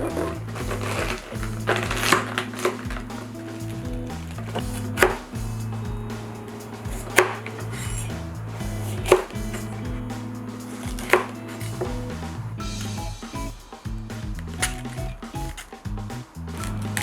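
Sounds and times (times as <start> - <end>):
knife chopping on cutting board: 0.0 - 3.2, 4.5 - 5.3, 6.9 - 9.8, 10.7 - 11.9
background music: 0.0 - 17.0.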